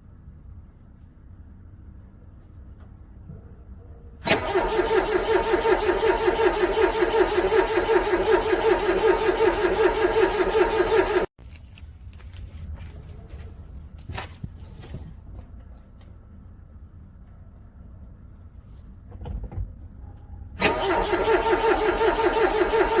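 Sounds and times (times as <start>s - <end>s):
car engine cranking on starter: 4.2s - 11.3s, 20.6s - 23.0s.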